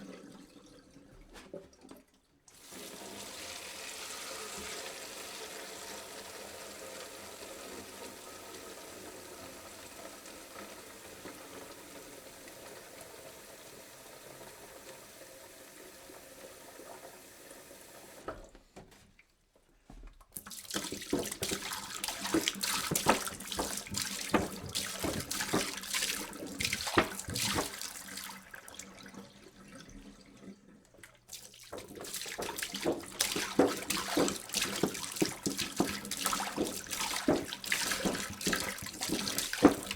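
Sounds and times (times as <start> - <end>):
water pouring into a jug: 0.0 - 18.2, 20.4 - 39.9.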